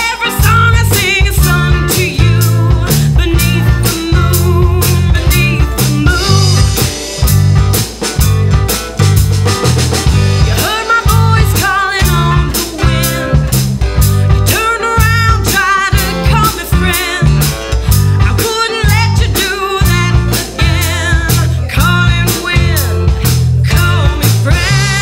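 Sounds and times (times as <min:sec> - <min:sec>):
bass guitar: 0:00.0 - 0:25.0
drum kit beat: 0:00.0 - 0:25.0
folk-rock band playing: 0:00.0 - 0:25.0
guitars: 0:00.0 - 0:25.0.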